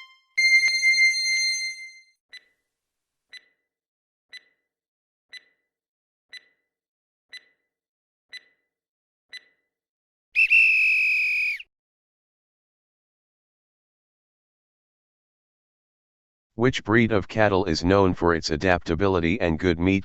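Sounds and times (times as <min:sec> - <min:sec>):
soft timer ticks: 0:02.3 - 0:02.6, 0:03.3 - 0:03.7, 0:04.3 - 0:04.7, 0:05.3 - 0:05.7, 0:06.3 - 0:06.7, 0:07.3 - 0:08.7, 0:09.3 - 0:09.7.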